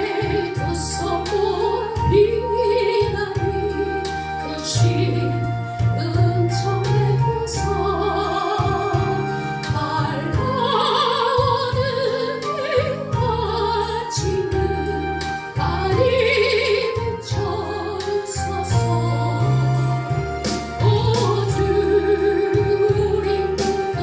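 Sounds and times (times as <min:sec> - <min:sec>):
sustained instrumental accompaniment: 0:00.0 - 0:24.0.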